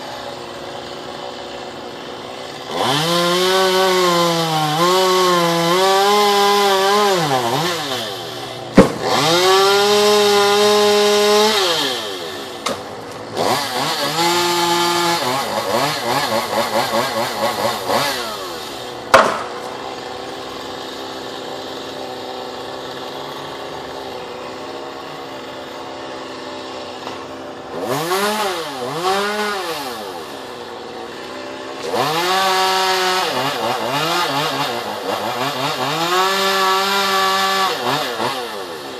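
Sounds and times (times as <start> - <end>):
chainsaw cutting wood: 0.0 - 38.9
sharp knocks: 8.7 - 9.3, 19.1 - 19.7.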